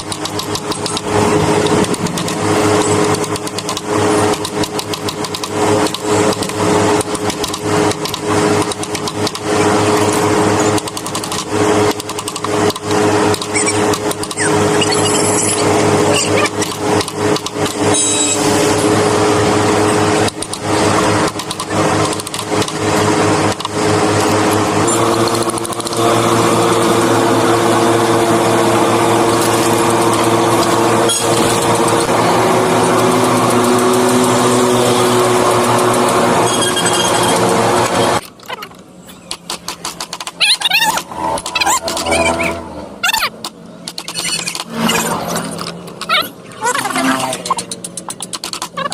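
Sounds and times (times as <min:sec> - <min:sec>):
power carving tool cutting wood: 0:24.2 - 0:38.2.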